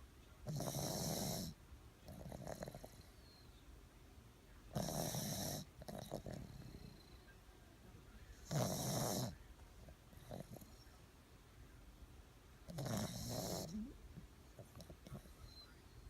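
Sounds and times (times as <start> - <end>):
loud rough snores: 0.5 - 3.0, 4.7 - 7.0, 8.5 - 9.4, 12.7 - 13.9.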